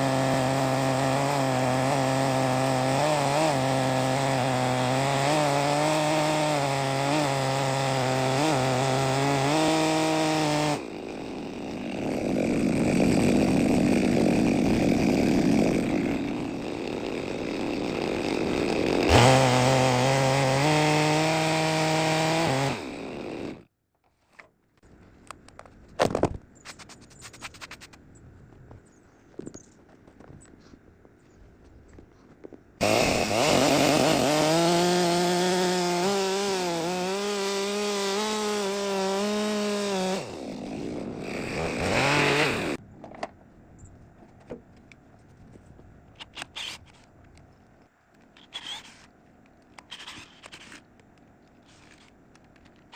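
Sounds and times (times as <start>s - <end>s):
chainsaw milling a log: 0.0s - 23.7s, 32.8s - 42.8s, 48.4s - 49.1s, 49.8s - 50.8s.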